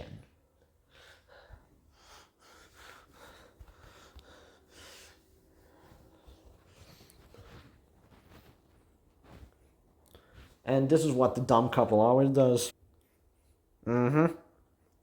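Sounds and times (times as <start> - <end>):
faint breaths: 0.7 - 8.6.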